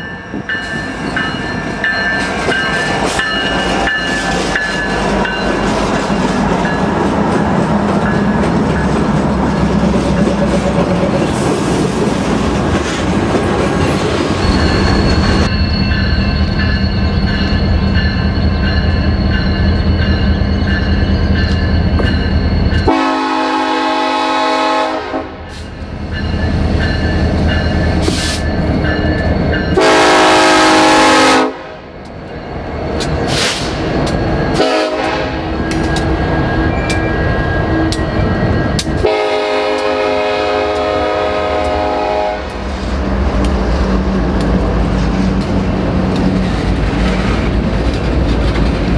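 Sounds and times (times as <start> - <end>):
locomotive air horn blasts: 22.9 - 25.6, 29.8 - 31.8, 34.6 - 35.5, 39.0 - 42.6
train wheels clattering: 32.0 - 48.9.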